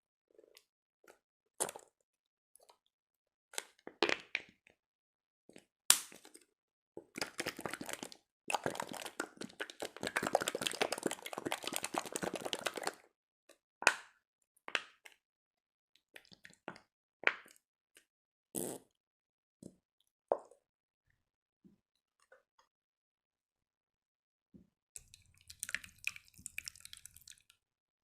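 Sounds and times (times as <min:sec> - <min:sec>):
slime crackling and squelching: 0:07.2 - 0:13.0, 0:25.0 - 0:27.5.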